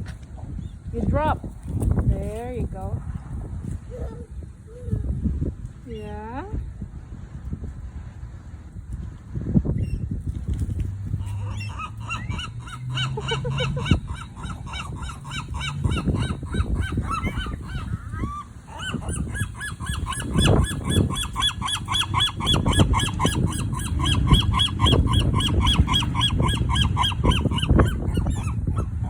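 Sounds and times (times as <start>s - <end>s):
seagulls squawking: 11.2s - 29.0s.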